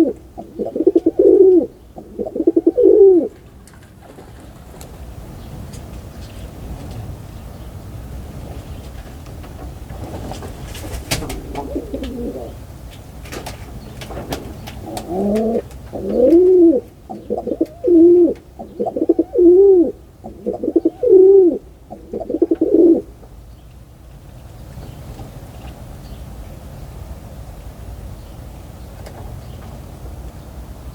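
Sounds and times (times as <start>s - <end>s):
pigeon cooing: 0.0s - 3.4s, 11.1s - 12.7s, 13.8s - 23.1s
steady low rumble: 0.0s - 3.6s.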